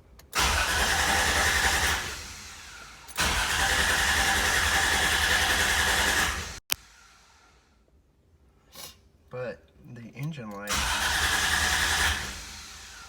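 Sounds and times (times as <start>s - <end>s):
engine cranking on starter: 0.2s - 7.6s, 10.6s - 13.0s.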